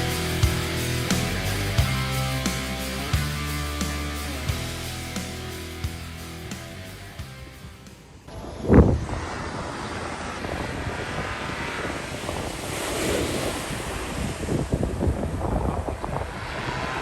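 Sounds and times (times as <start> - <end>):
ocean surf: 0.0 - 17.0
wind on microphone: 7.4 - 17.0.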